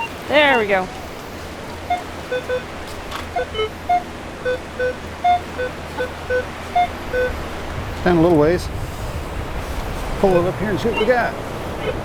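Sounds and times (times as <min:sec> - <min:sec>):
metal detector beeps: 0:00.0 - 0:00.8, 0:01.8 - 0:07.4, 0:10.3 - 0:12.0
surf and wind rumble: 0:00.0 - 0:12.0.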